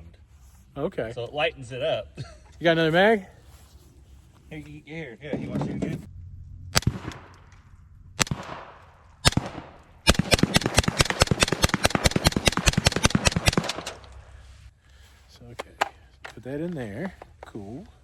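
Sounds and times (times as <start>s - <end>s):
suppressed rifle shots: 6.7s - 14.2s.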